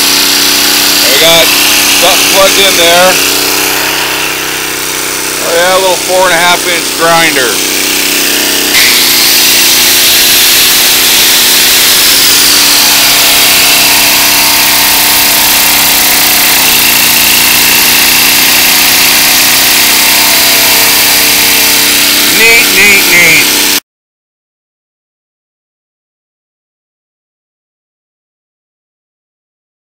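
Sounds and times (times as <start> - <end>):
angle grinder whining: 0.0 - 23.8
generator engine running: 0.0 - 23.8.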